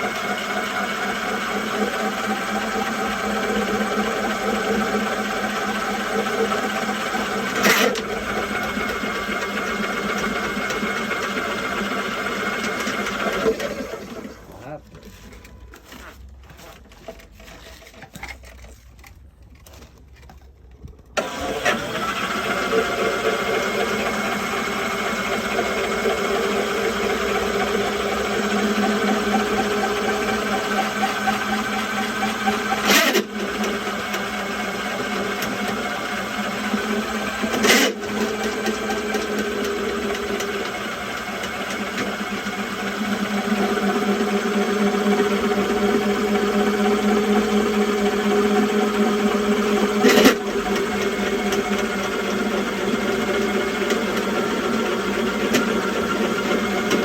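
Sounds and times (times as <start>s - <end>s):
drain-cleaning machine motor humming: 0.0s - 14.6s, 21.2s - 57.0s.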